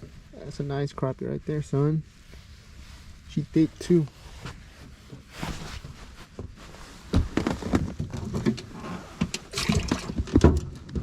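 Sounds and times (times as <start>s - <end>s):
water splashing and sloshing: 7.0s - 11.0s.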